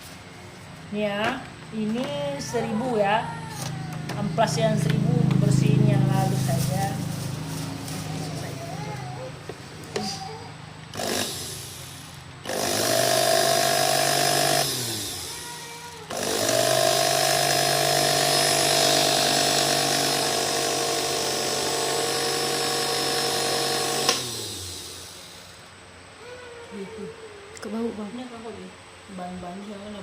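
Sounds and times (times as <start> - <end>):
blender motor humming and whining: 10.9 - 25.6.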